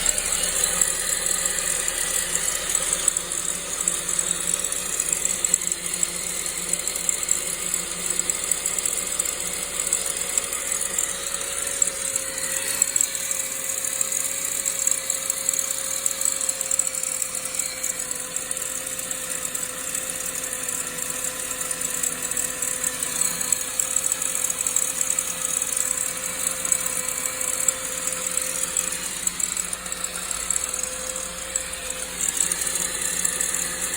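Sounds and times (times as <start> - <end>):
car engine idling: 0.0 - 8.3
engine rattling: 0.0 - 33.9.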